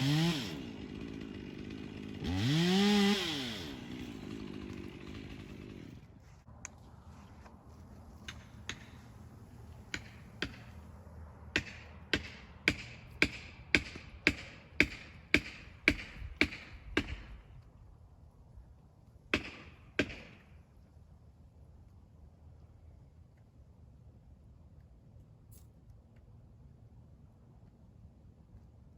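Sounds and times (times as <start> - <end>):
hammer striking metal wedge: 9.9 - 10.7, 11.6 - 17.3.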